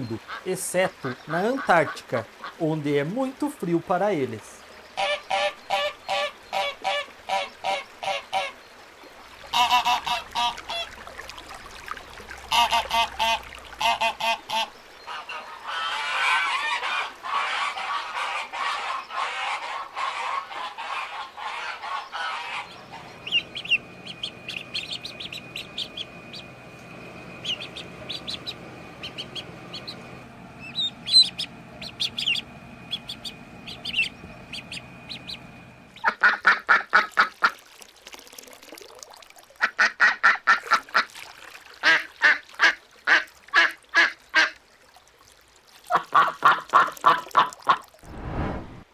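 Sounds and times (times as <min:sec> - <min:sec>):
ducks quacking: 0:00.0 - 0:02.6, 0:05.0 - 0:08.6, 0:09.5 - 0:11.0, 0:12.4 - 0:37.5, 0:45.9 - 0:47.8
steady low hum: 0:21.8 - 0:36.2.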